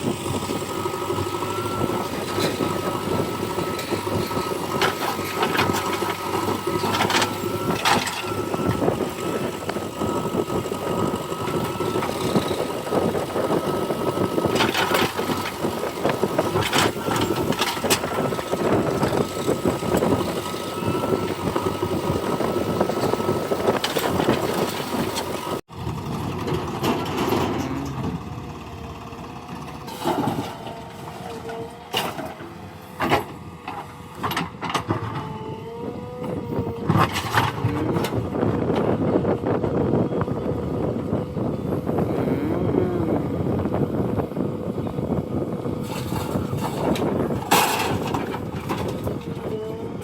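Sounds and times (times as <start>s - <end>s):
diesel engine running under load: 0.0s - 50.0s
knocks and clatter: 45.8s - 49.3s.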